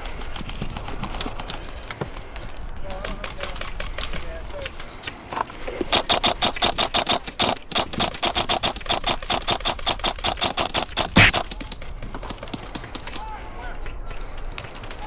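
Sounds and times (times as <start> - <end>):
airsoft rifle rapid firing: 5.9 - 11.9.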